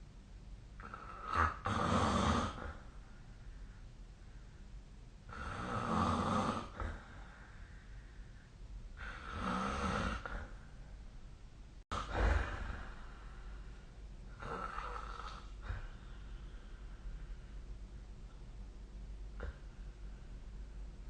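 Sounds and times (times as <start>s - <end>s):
person snoring: 0.8s - 2.8s, 5.3s - 7.3s, 9.0s - 10.6s, 11.9s - 13.5s, 14.3s - 16.2s.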